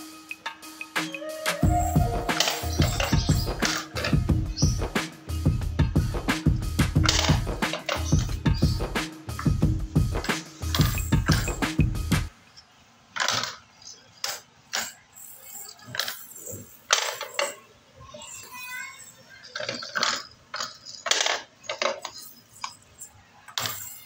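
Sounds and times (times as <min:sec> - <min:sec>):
background music: 0:00.0 - 0:12.3
toy dominoes clicking and clattering: 0:13.2 - 0:17.6, 0:19.4 - 0:24.0.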